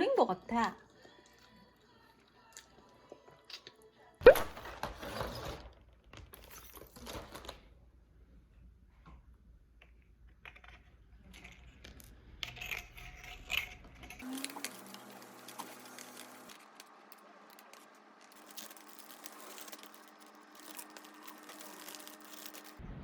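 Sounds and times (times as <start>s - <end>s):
small objects clicking and clattering: 9.8s - 22.8s.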